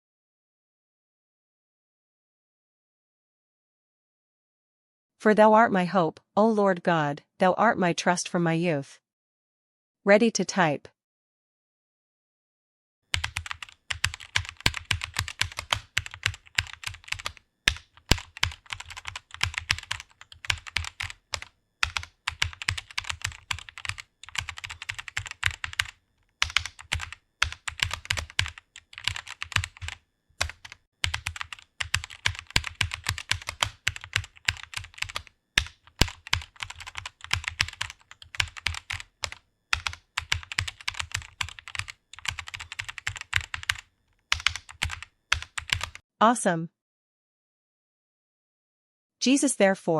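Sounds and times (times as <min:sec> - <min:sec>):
fast typing on keyboard: 0:13.1 - 0:46.0.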